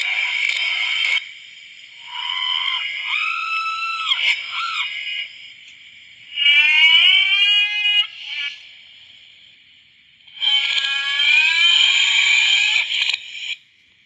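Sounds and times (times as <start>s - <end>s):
cartoon screams: 2.0s - 5.0s.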